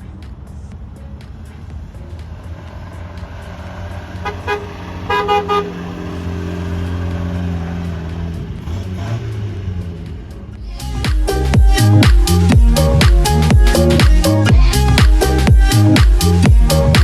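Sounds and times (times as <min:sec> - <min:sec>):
car engine running: 0:00.0 - 0:17.0
car horn toots: 0:04.2 - 0:06.6.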